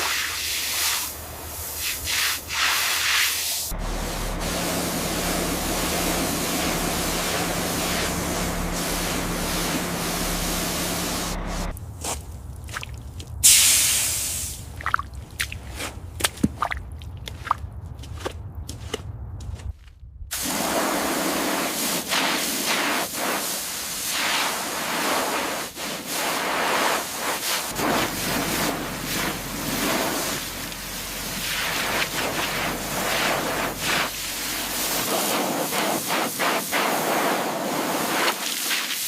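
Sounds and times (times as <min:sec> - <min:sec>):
water spraying hard on surface: 0:00.0 - 0:11.7, 0:13.4 - 0:14.6, 0:20.3 - 0:39.0
low hum: 0:03.7 - 0:13.4, 0:27.7 - 0:35.8.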